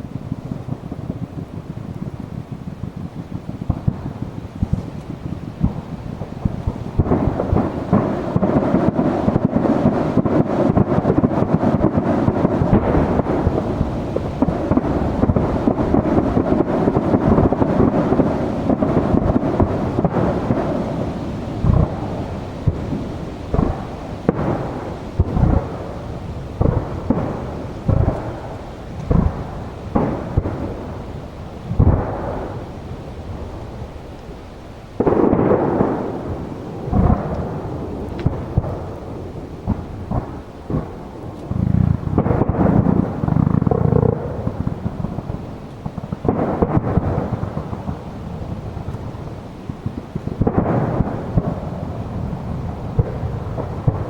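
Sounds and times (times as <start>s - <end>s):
firework shells bursting: 0.0s - 54.0s.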